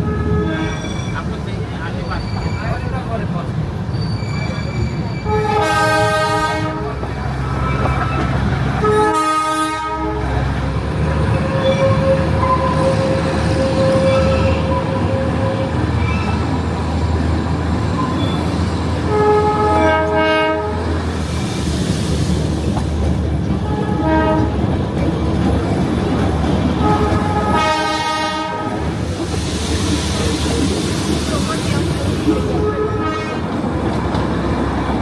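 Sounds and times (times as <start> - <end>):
train horn blasts: 0.0 - 0.9, 5.2 - 7.9, 8.8 - 10.4, 11.3 - 15.8, 19.0 - 21.0, 23.6 - 24.6, 26.8 - 29.0, 32.5 - 33.5
train rumble with wheel clatter: 0.0 - 35.0.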